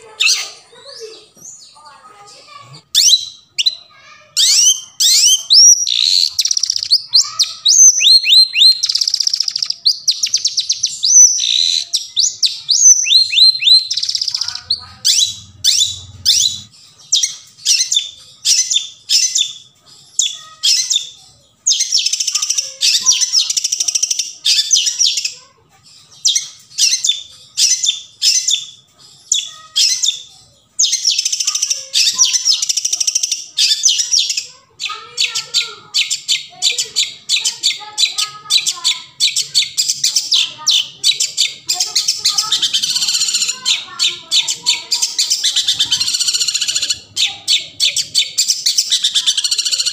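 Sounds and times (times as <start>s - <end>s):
bird chattering song: 0.0s - 49.9s
bird calling sharp high notes: 2.9s - 16.7s.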